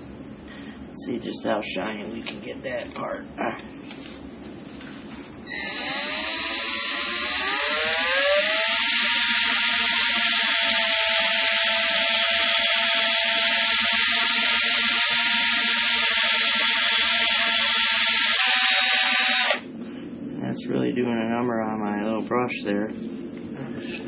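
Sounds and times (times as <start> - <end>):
power drill motor whine: 5.5 - 19.7.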